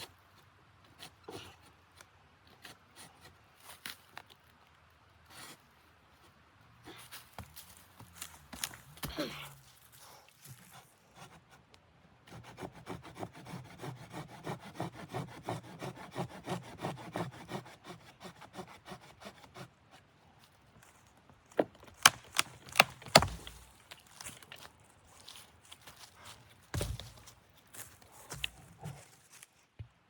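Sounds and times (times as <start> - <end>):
hand saw cutting wood: 12.3 - 20.0, 22.0 - 23.7.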